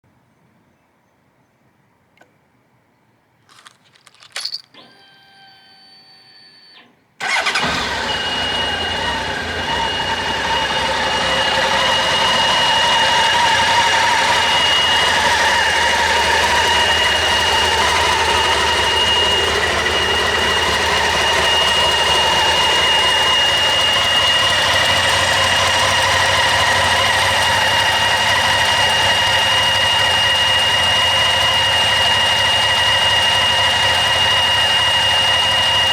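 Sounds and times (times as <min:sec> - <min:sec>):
clicks: 0:03.5 - 0:05.0
motorcycle engine idling: 0:07.2 - 0:35.9.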